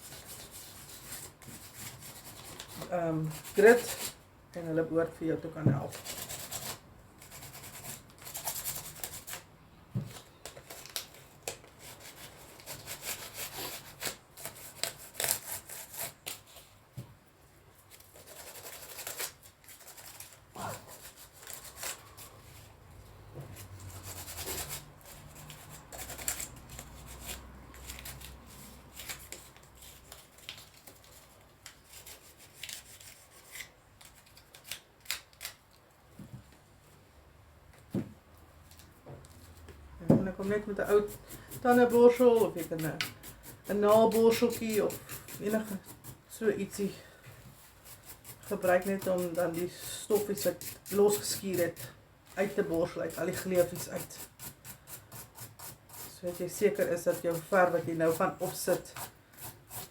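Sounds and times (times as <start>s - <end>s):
sandpaper scratching paint: 53.1s - 59.9s.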